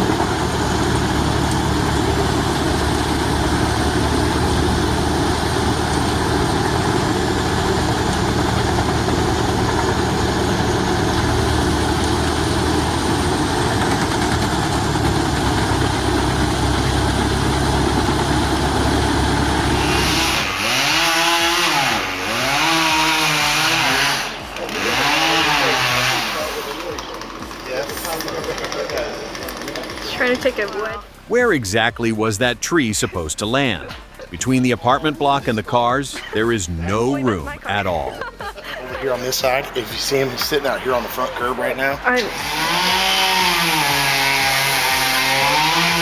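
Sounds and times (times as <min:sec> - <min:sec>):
shredding machine grinding: 0:00.0 - 0:30.4, 0:39.6 - 0:46.0
chainsaw revving: 0:00.0 - 0:31.3, 0:36.1 - 0:46.0.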